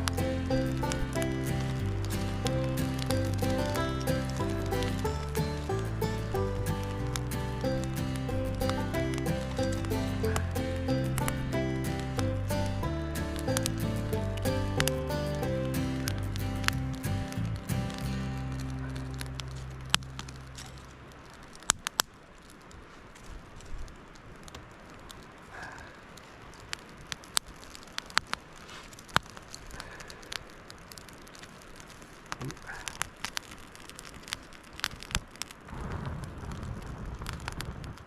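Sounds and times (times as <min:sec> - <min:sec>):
background music: 0:00.0 - 0:19.5
campfire crackling and popping: 0:00.0 - 0:38.0.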